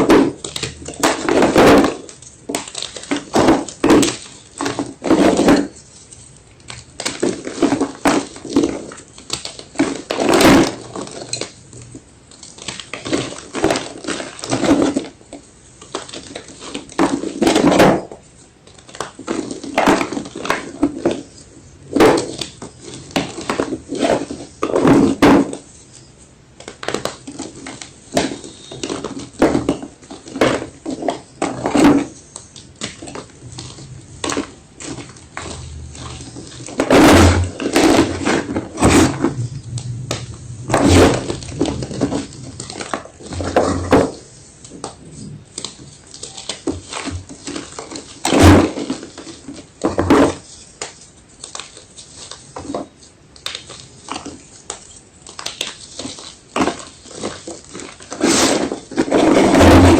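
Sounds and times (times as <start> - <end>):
chalk block crunching: 53.6 - 59.9.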